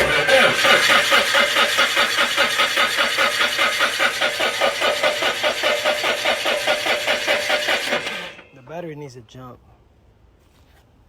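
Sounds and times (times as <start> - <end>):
engine cranking by starter motor: 0.0 - 8.7.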